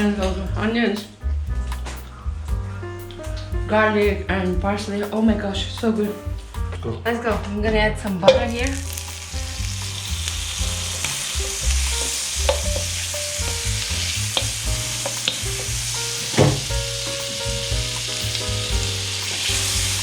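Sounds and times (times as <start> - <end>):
food sizzling in butter: 8.6 - 20.0.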